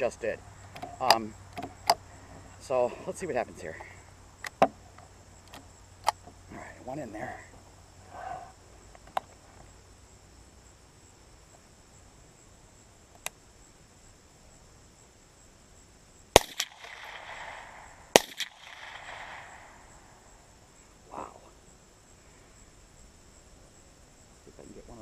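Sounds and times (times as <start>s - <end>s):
faint clicks: 13.1s - 13.4s
gunshots with rolling echo: 16.3s - 20.3s.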